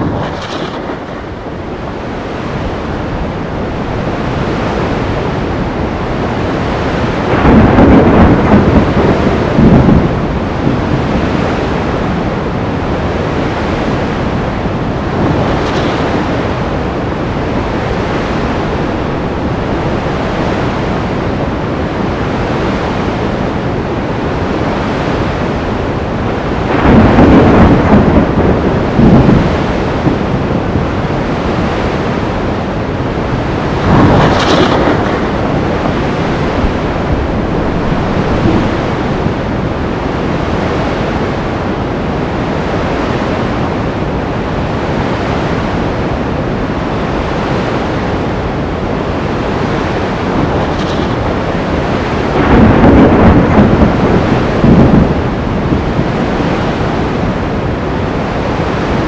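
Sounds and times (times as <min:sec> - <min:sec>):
surf roaring: 0:00.0 - 0:59.0
wind roaring: 0:00.0 - 0:59.0.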